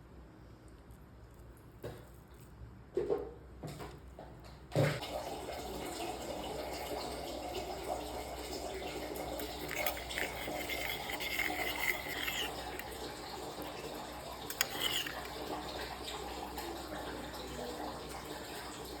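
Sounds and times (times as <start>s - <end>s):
running water: 4.8s - 19.0s.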